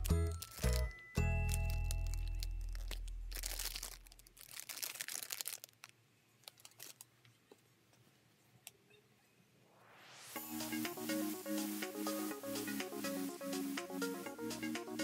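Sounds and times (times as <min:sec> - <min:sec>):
plastic packaging crinkling: 0:00.0 - 0:07.3
low background music note: 0:10.4 - 0:15.0.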